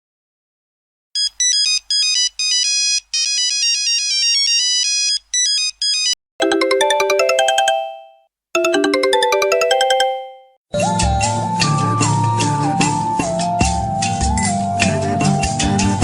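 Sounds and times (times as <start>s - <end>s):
buzzy beeping ringtone melody: 6.4s - 10.6s
polyphonic ringtone melody: 6.4s - 10.6s.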